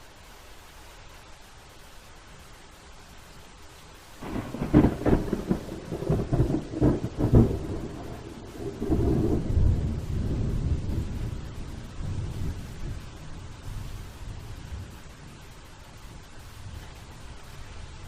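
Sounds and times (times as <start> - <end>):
steady hiss: 0.0 - 18.0
thunder cracks and rumble: 4.2 - 13.1.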